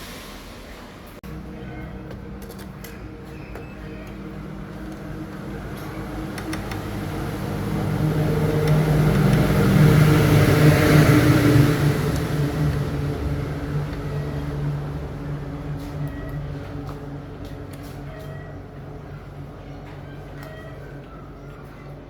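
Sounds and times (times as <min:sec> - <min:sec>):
engine hum: 0:00.0 - 0:22.0.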